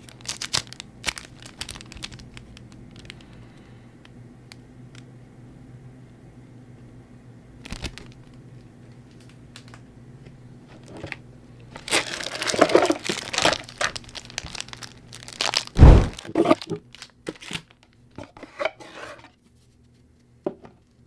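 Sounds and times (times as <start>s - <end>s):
plastic wrapping crinkling: 0.0s - 3.3s, 10.8s - 17.9s
heavy thump: 15.8s - 16.2s.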